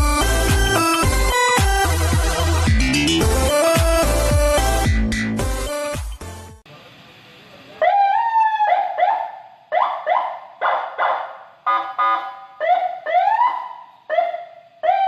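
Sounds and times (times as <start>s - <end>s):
horn-like siren blast: 11.6s - 15.0s.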